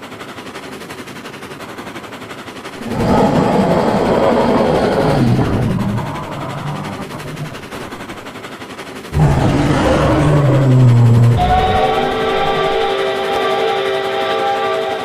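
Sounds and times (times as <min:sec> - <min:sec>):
rough rattling over low drone: 0:02.6 - 0:15.0
train horns chord: 0:09.2 - 0:15.0.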